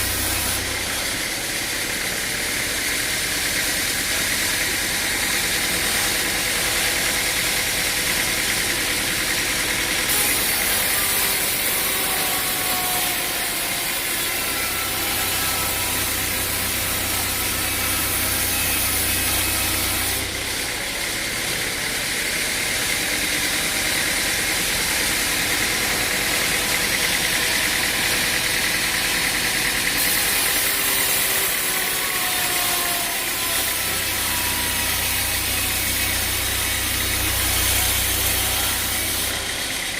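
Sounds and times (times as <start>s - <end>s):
machine engine running: 0.0s - 11.5s, 19.7s - 39.9s.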